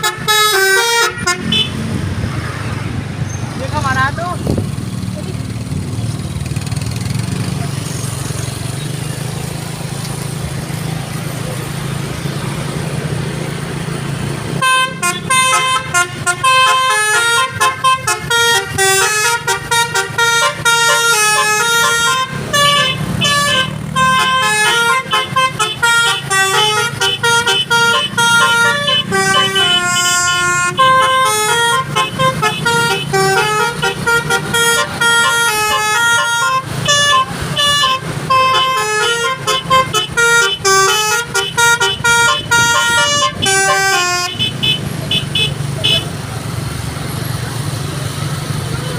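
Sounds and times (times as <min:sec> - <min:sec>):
horn playing fast melody: 0:00.0 - 0:01.8, 0:14.6 - 0:46.1.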